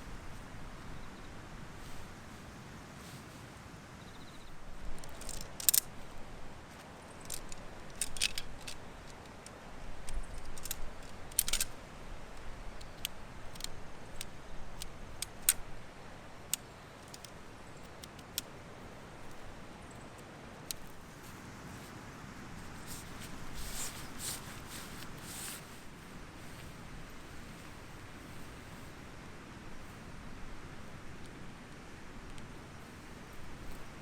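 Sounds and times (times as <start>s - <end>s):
low steady background hiss: 0.0s - 34.0s
small hard objects clicking: 4.9s - 5.9s, 7.2s - 11.7s.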